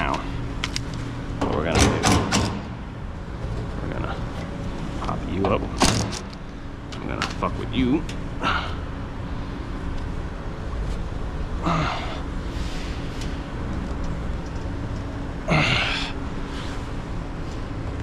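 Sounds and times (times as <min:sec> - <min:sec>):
steady hum with faint tone: 0:00.0 - 0:18.0
person sighing with effort: 0:08.4 - 0:08.9, 0:11.6 - 0:12.3, 0:15.5 - 0:16.2.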